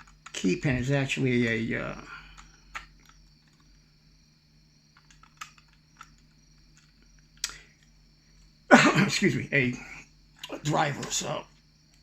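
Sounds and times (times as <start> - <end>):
faint steady hum: 0.0 - 12.0
small lock parts clicking: 5.0 - 7.9.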